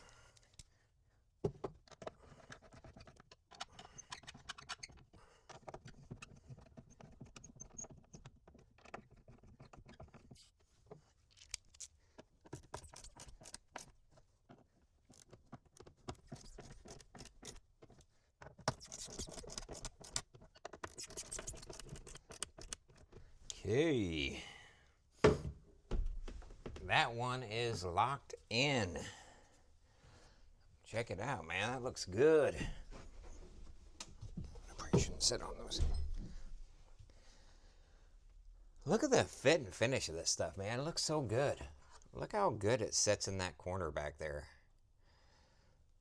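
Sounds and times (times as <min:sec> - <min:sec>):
scraping and rubbing: 0:12.4 - 0:23.2.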